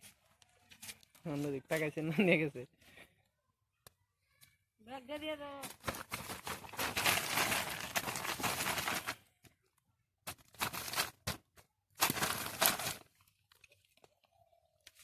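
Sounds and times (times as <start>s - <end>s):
bag rustling and crinkling: 5.6s - 9.3s, 10.3s - 13.3s.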